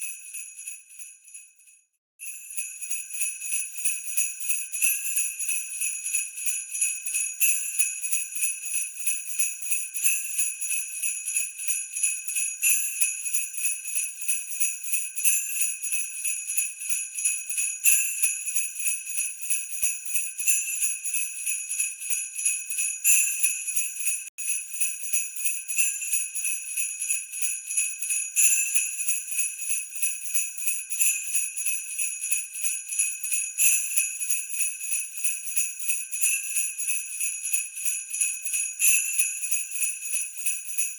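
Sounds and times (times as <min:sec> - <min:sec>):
sleigh bells jingling: 0:16.3 - 0:40.9.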